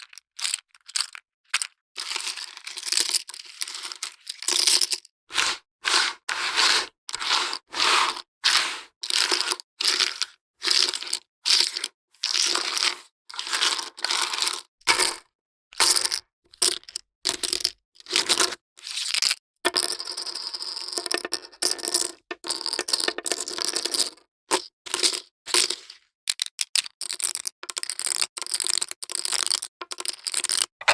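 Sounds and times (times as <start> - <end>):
plastic poker chips clattering: 0.0 - 2.1, 25.8 - 30.9.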